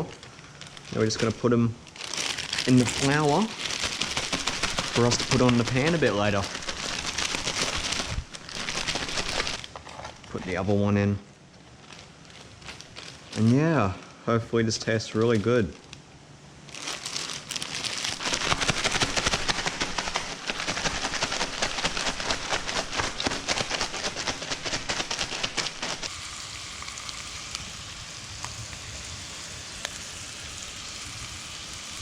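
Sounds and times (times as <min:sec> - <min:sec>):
fish frying in oil: 0:26.0 - 0:32.0.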